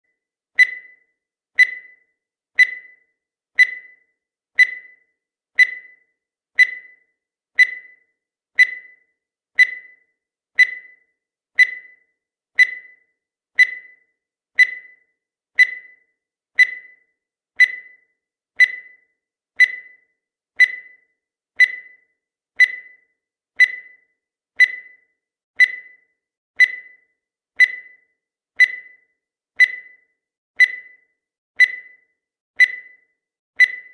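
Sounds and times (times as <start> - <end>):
timer ticking: 0.6 - 33.9.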